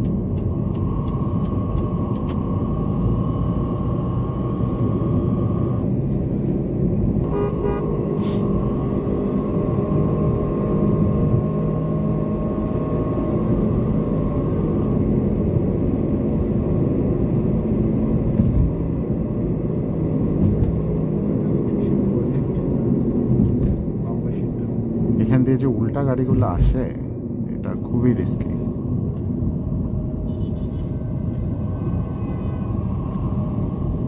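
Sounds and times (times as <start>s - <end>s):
car engine and tyre noise: 0.0s - 34.0s
vehicle horn toot: 7.2s - 8.6s, 30.2s - 31.0s, 31.7s - 33.0s.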